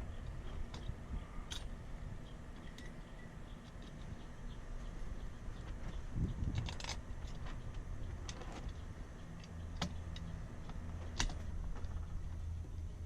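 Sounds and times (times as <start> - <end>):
low steady hum: 0.0 - 13.0
metal parts clicking and knocking: 6.4 - 7.5.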